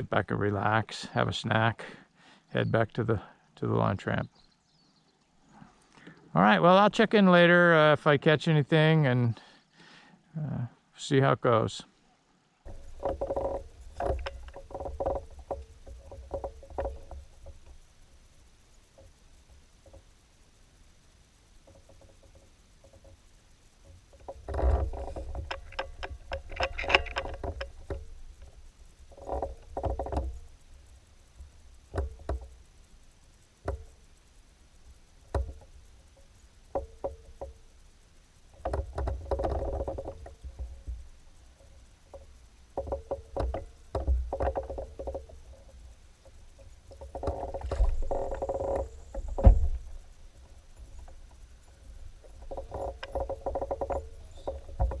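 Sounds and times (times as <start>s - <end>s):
gear knocking and rubbing: 12.7s - 20.4s, 21.5s - 55.0s.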